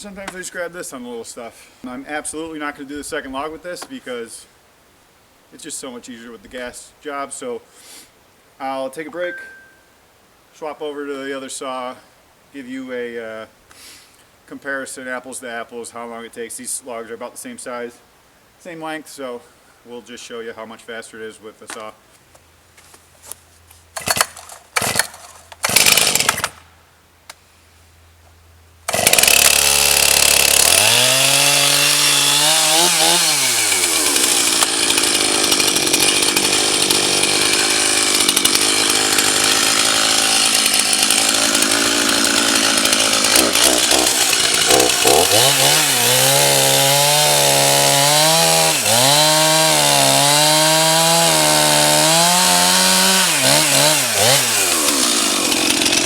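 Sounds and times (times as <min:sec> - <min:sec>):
chainsaw cutting log: 0:24.0 - 0:26.6, 0:28.9 - 0:56.0
chainsaw engine revving: 0:24.0 - 0:26.6, 0:28.9 - 0:56.0.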